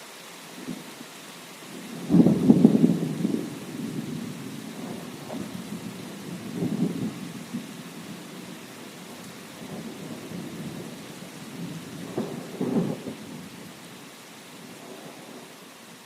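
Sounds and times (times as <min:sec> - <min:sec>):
steady rain: 0:00.0 - 0:16.0
rolling thunder: 0:01.7 - 0:13.7.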